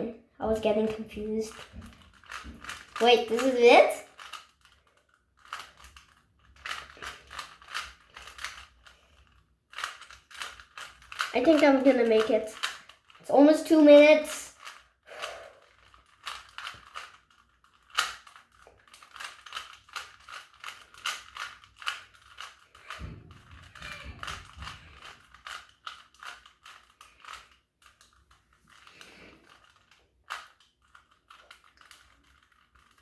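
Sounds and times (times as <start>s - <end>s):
plastic cube clicking: 1.5s - 3.4s, 4.2s - 13.2s, 14.5s - 23.0s, 23.7s - 33.0s.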